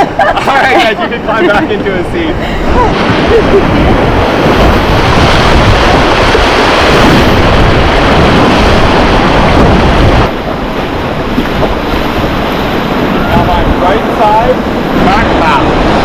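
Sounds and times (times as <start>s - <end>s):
white-water river rushing: 0.0s - 16.0s
wind noise on microphone: 0.0s - 16.0s.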